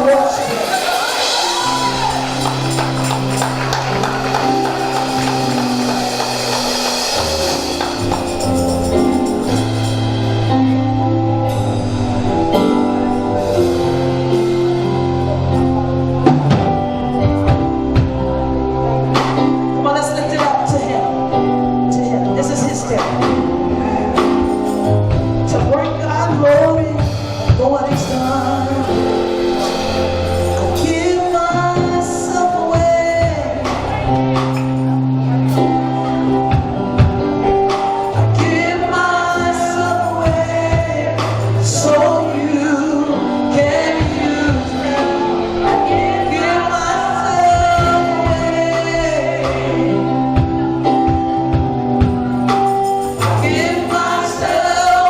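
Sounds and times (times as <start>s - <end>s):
gospel choir singing: 0.0s - 26.7s, 37.7s - 51.2s, 53.0s - 55.0s
band with bass and drums: 0.0s - 55.0s.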